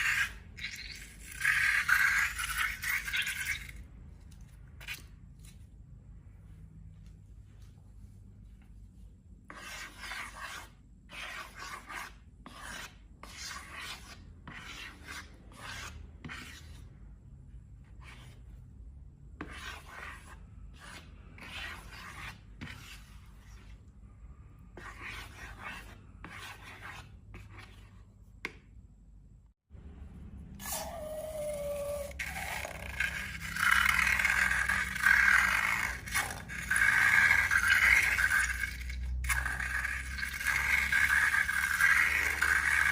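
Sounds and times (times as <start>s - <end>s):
rubbing and scraping strokes: 0.0s - 5.7s, 7.5s - 17.0s, 19.4s - 28.1s, 30.6s - 42.9s.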